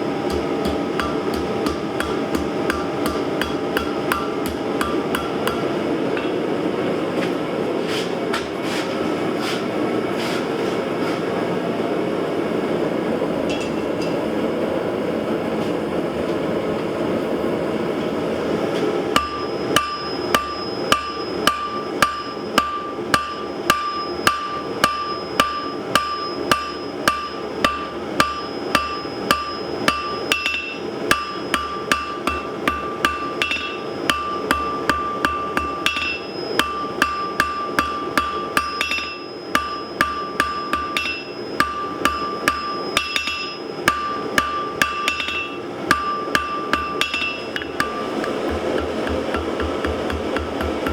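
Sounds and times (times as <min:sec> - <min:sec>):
hammer striking anvil: 0:00.2 - 0:06.4, 0:19.1 - 0:50.9.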